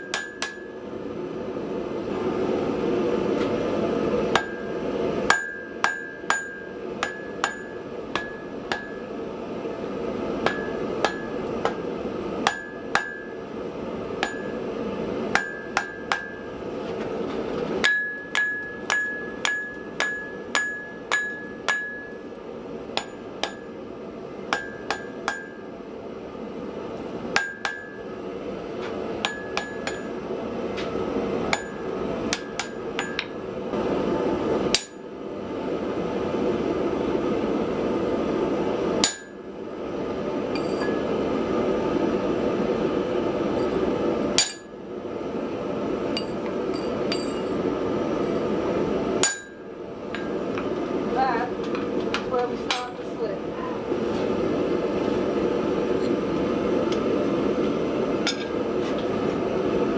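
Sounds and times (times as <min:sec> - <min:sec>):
hammer striking steel on anvil: 0:00.0 - 0:00.8, 0:04.4 - 0:04.7, 0:05.3 - 0:09.1, 0:10.4 - 0:13.4, 0:14.2 - 0:14.6, 0:15.4 - 0:16.6, 0:17.8 - 0:22.3, 0:22.9 - 0:23.8, 0:24.5 - 0:25.7, 0:27.4 - 0:28.1, 0:29.2 - 0:30.1, 0:31.5 - 0:33.4, 0:34.7 - 0:35.0, 0:39.0 - 0:39.4, 0:40.6 - 0:41.1, 0:44.4 - 0:44.8, 0:46.2 - 0:47.6, 0:49.2 - 0:49.6, 0:50.2 - 0:50.4.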